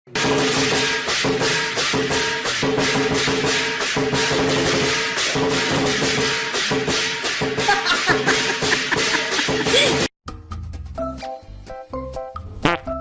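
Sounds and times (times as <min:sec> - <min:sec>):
background music with steady beat: 0:00.1 - 0:13.0
shaker percussion: 0:00.5 - 0:10.1.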